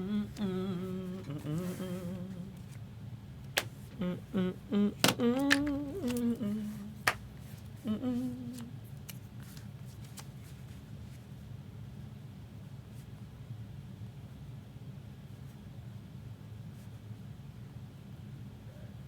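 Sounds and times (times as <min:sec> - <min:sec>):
person humming: 0:00.0 - 0:02.8, 0:03.9 - 0:07.2, 0:07.8 - 0:08.8.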